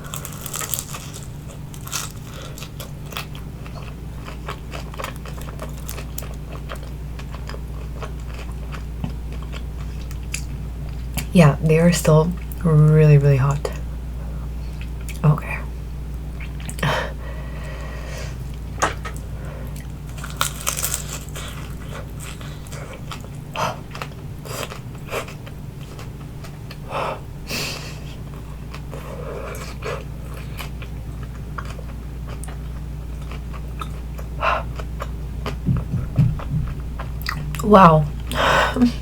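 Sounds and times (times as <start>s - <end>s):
crunching spring rolls: 0.0s - 11.3s, 17.7s - 26.8s
steady low hum: 0.0s - 39.0s.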